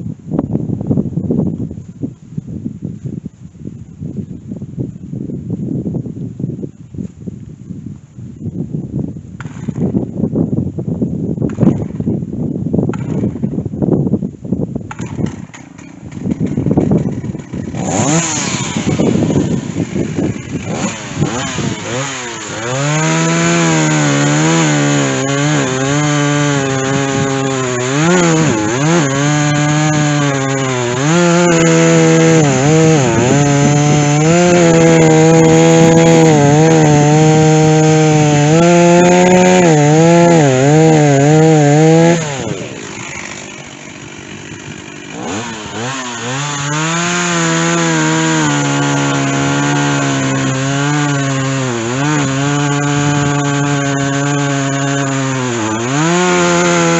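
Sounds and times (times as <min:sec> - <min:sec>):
chainsaw cutting wood: 0:09.4 - 0:10.1, 0:11.4 - 0:12.2, 0:12.9 - 0:13.7, 0:14.8 - 0:56.9.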